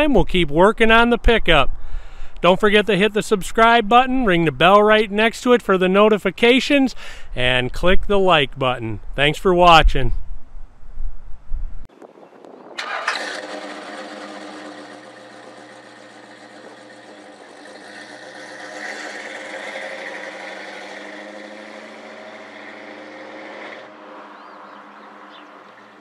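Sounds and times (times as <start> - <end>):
vehicle engine running: 12.8 - 26.0.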